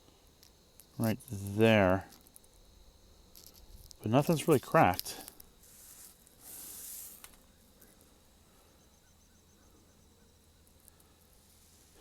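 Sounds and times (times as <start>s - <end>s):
rustling hiss: 0.0s - 9.0s, 10.4s - 12.0s
faint high chirps: 8.6s - 10.6s.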